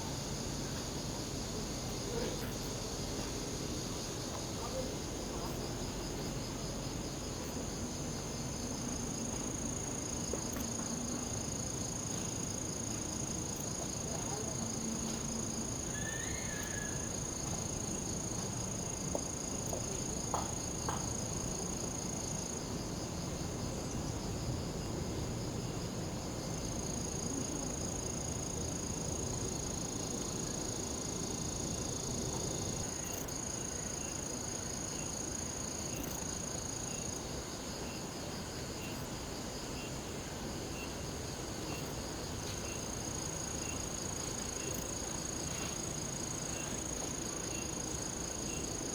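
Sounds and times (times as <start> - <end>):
cicadas singing: 7.7 - 22.8, 41.6 - 48.9.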